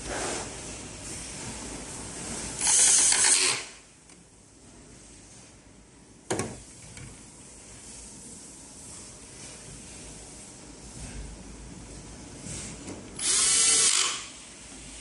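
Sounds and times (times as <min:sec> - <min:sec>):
loud ratcheting rasp: 0:02.6 - 0:03.8, 0:13.2 - 0:14.3.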